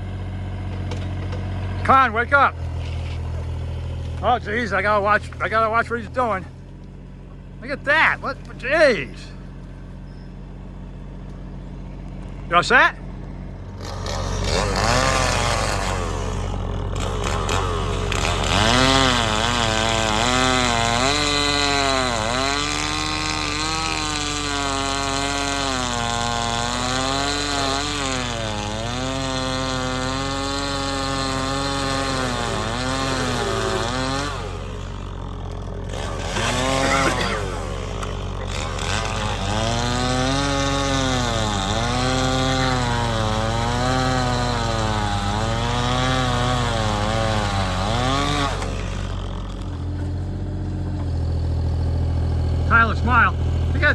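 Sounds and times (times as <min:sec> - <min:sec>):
chainsaw cutting log: 0:00.0 - 0:53.9.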